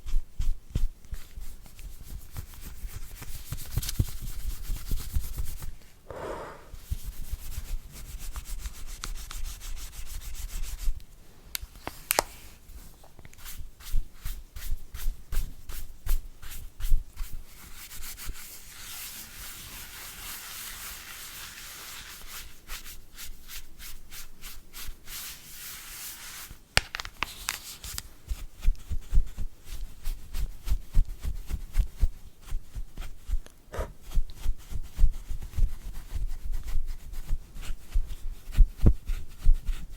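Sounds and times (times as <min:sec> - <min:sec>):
brush scrubbing hard surface: 0:17.2 - 0:22.8.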